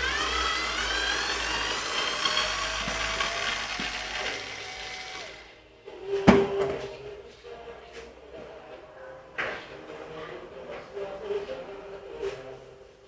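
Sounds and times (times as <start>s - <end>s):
electric screwdriver motor whirring: 0.0s - 5.5s
metallic clunk: 6.2s - 7.0s.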